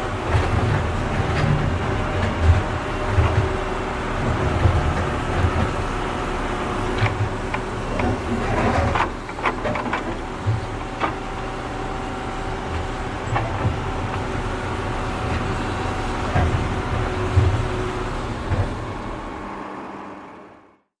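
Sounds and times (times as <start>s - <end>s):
tractor engine running: 0.0s - 19.6s
digging knocks and thumps: 15.2s - 17.8s.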